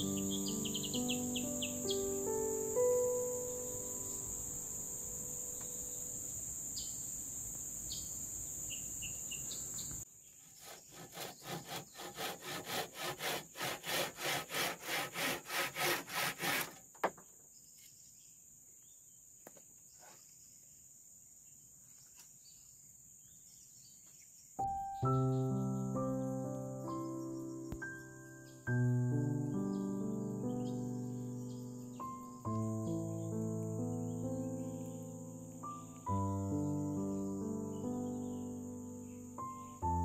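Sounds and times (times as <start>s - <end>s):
insects buzzing: 0.0s - 17.0s, 24.7s - 40.0s
hand saw cutting wood: 10.4s - 16.9s.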